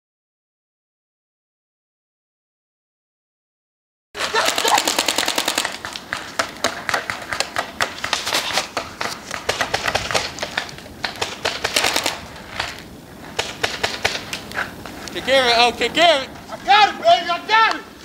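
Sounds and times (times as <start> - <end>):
paintball markers firing: 4.2 - 12.7, 13.3 - 14.6.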